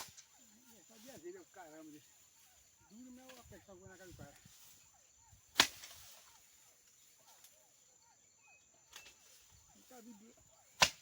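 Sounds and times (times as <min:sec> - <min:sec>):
faint bird chirps: 0:00.0 - 0:10.8
chopping strike into wood: 0:05.5 - 0:06.0, 0:10.8 - 0:11.0.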